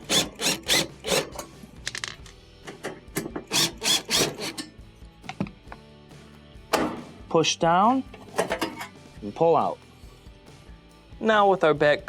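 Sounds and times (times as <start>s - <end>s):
screwdriver scraping out screws: 0.0s - 1.5s, 3.2s - 4.7s.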